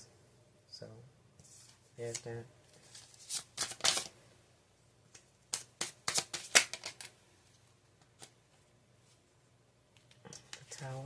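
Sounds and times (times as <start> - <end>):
cards shuffling and snapping: 2.0 - 4.1, 5.1 - 7.2, 8.0 - 8.4.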